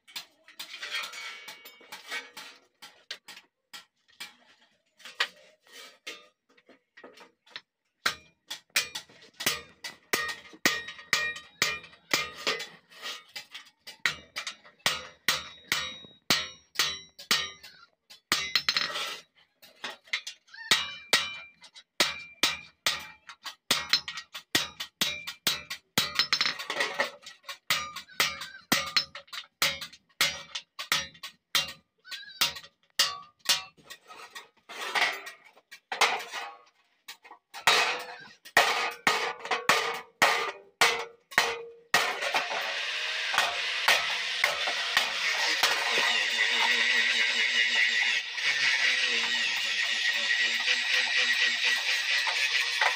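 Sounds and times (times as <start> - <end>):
hammer striking iron on anvil: 8.0 - 12.8, 13.4 - 18.9, 20.8 - 31.8, 32.4 - 33.8, 37.7 - 52.9
steady rasping noise: 42.0 - 52.9.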